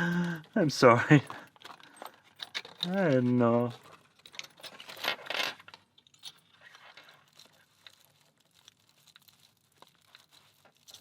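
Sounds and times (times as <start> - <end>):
metallic clicks and rattles: 0.0 - 7.2.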